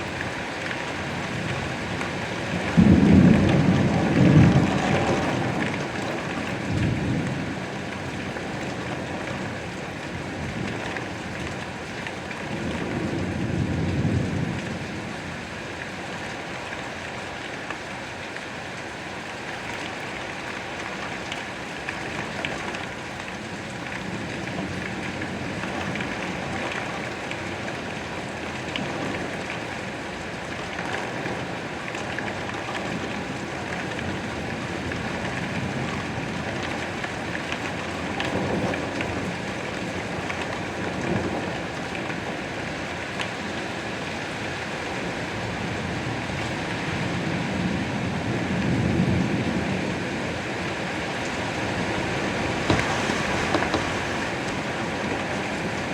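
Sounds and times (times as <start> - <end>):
steady rain: 0.0 - 55.9
thunder rumbling: 51.3 - 55.9.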